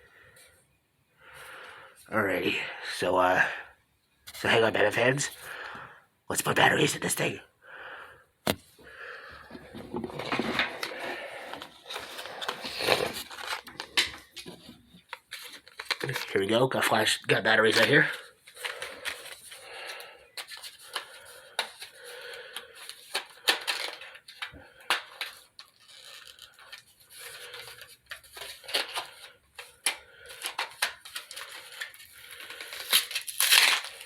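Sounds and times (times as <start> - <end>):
packaging crinkling and tearing: 9.6 - 16.4, 17.5 - 34.0.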